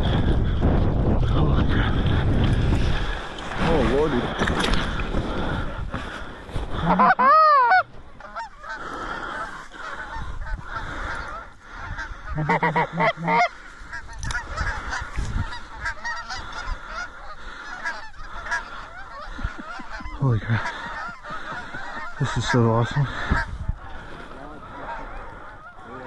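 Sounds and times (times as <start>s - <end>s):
geese honking and cackling: 5.2s - 26.0s.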